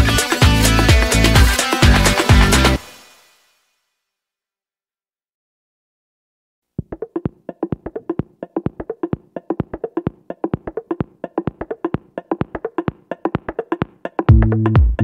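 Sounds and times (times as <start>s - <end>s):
electronic music: 0.0s - 3.2s, 9.0s - 15.0s.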